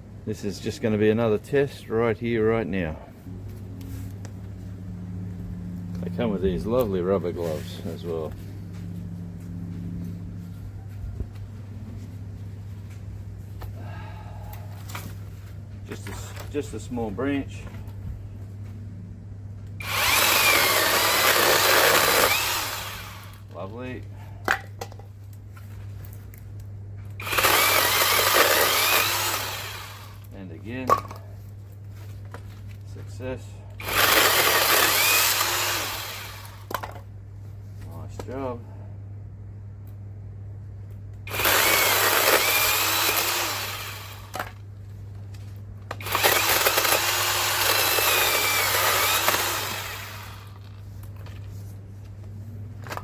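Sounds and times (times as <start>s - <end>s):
electric chainsaw cutting branch: 19.8s - 23.5s, 27.2s - 30.3s, 33.8s - 36.7s, 41.2s - 44.6s, 45.9s - 50.8s.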